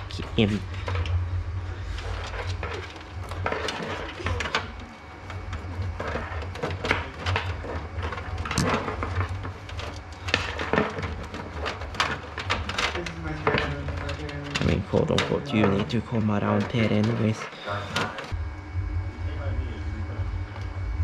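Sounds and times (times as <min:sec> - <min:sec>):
steady low hum: 0:00.0 - 0:21.0
clicks and knocks of pc parts: 0:02.0 - 0:18.3.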